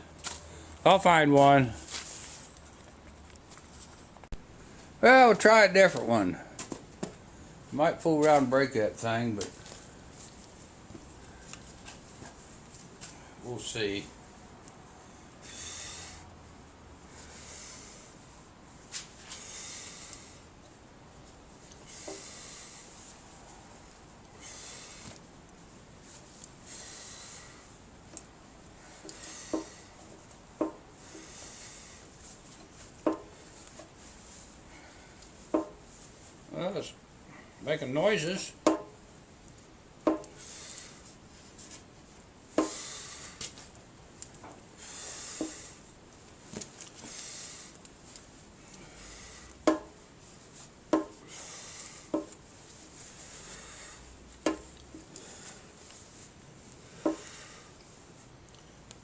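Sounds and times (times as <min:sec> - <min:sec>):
sheet metal popping with ring: 0:38.6 - 0:39.0.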